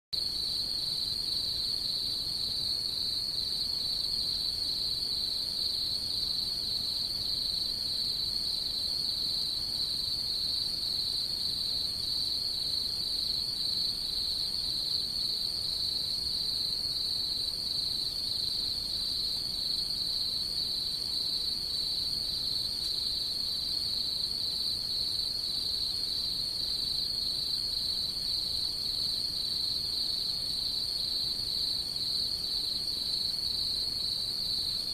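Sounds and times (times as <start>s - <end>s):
faint low hiss: 0.2s - 34.9s
night insects trilling: 0.2s - 34.9s.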